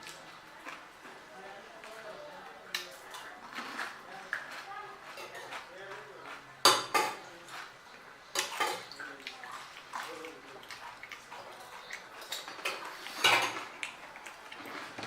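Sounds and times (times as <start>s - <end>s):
wet chewing and slurping: 2.7s - 6.7s, 7.3s - 15.0s.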